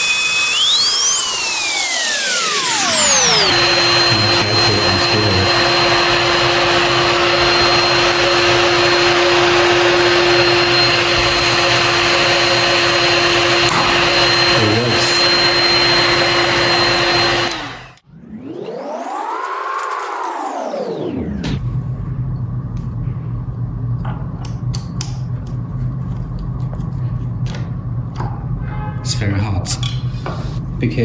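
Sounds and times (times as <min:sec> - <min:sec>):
heat gun blowing air: 0:00.0 - 0:18.0.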